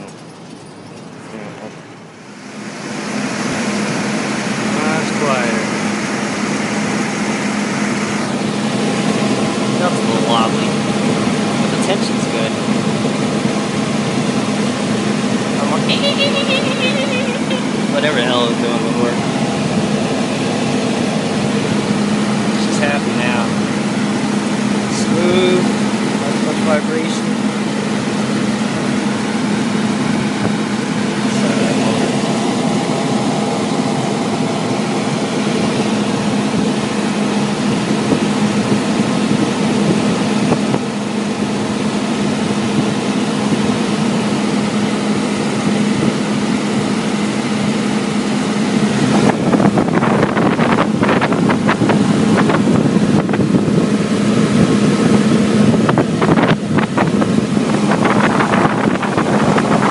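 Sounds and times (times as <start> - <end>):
belt-driven blower humming: 0.0 - 59.9
wind buffeting microphone: 27.0 - 59.9.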